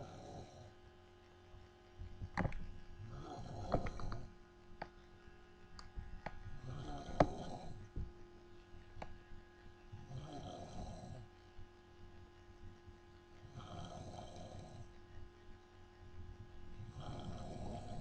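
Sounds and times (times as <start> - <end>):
person snoring: 3.1 - 4.3, 6.6 - 7.9, 10.0 - 11.3, 13.5 - 14.8, 16.9 - 18.0.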